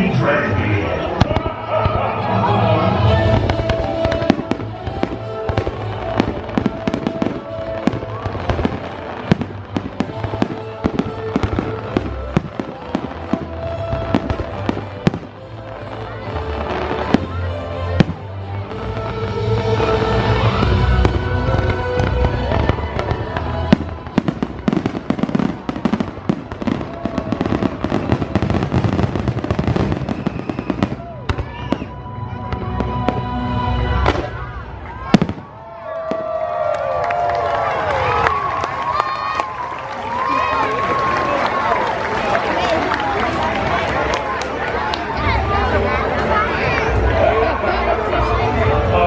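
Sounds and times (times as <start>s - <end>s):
fireworks bangs and cracks: 0.0s - 45.8s
background music: 0.0s - 49.0s
loud firework crack: 19.6s - 32.0s.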